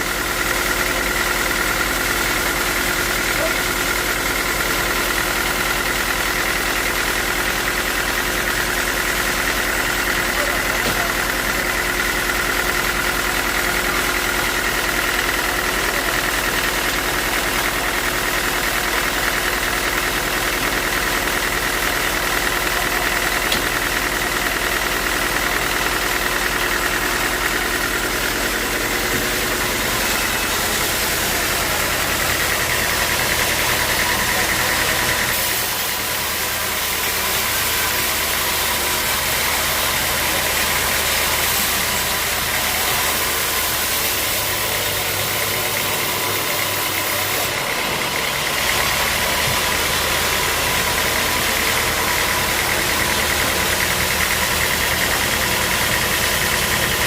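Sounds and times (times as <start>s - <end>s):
sawmill machinery engine drone: 0.0s - 57.0s.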